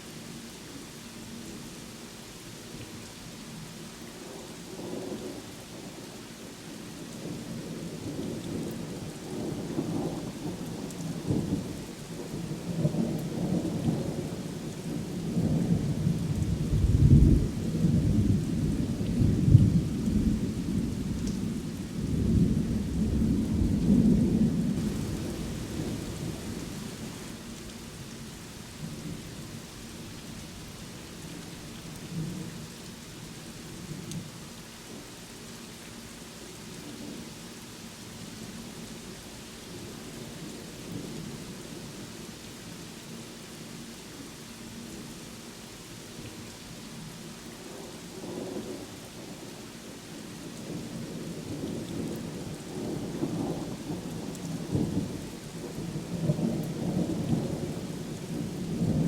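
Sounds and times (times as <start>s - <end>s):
steady rain: 0.0s - 59.0s
thunder rumbling: 16.3s - 27.4s.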